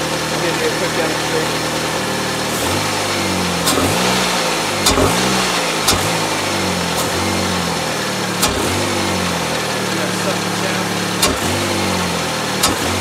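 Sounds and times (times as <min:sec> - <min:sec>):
car engine revving: 0:00.0 - 0:13.0
sharp clicks: 0:03.7 - 0:04.0, 0:04.8 - 0:06.3, 0:08.4 - 0:09.0, 0:11.2 - 0:11.7, 0:12.6 - 0:13.0.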